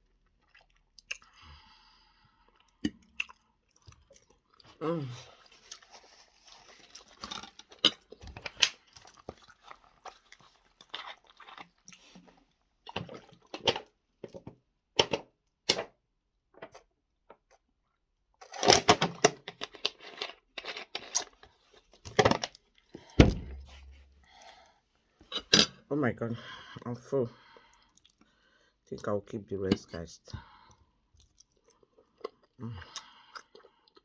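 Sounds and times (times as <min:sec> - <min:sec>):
person chewing and smacking: 0:00.1 - 0:01.4, 0:02.4 - 0:14.4, 0:19.4 - 0:24.7, 0:27.6 - 0:29.1, 0:30.6 - 0:34.0.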